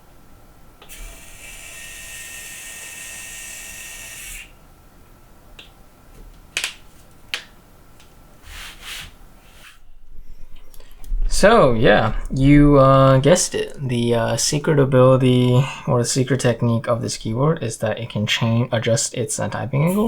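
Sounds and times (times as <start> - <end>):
small electric motor whining: 0.8 - 4.6.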